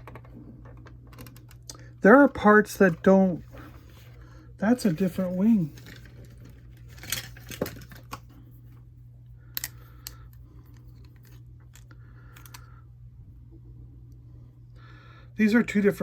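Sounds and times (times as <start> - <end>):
plastic parts clicking and rattling: 0.0 - 1.8, 4.9 - 8.4, 9.5 - 12.7
steady low hum: 0.0 - 16.0.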